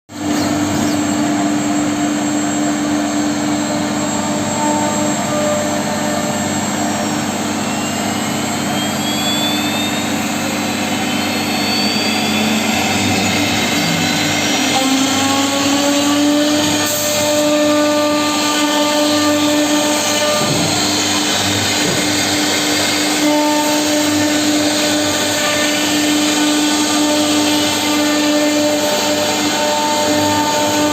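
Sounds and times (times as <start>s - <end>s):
router carving wood: 12.1s - 30.9s.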